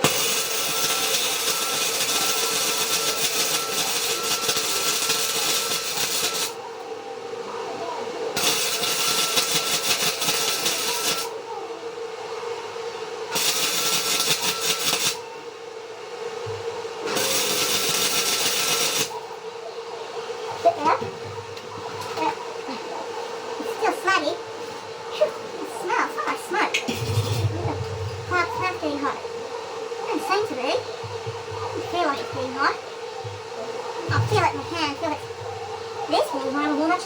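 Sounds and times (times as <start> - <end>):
welding arc crackling: 0.0 - 6.6, 8.4 - 11.3, 13.3 - 15.2, 17.1 - 19.2, 26.7 - 29.2
steady hum: 11.2 - 37.0.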